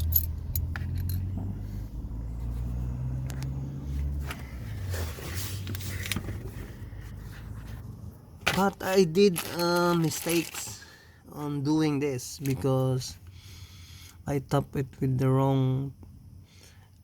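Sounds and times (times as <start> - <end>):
motor vehicle rumble: 0.0 - 11.2.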